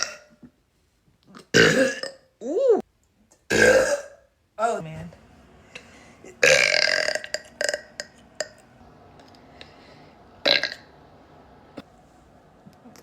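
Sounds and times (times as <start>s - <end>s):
woman burping loudly: 1.4s - 2.4s, 3.5s - 4.3s, 6.4s - 8.6s, 10.4s - 10.9s.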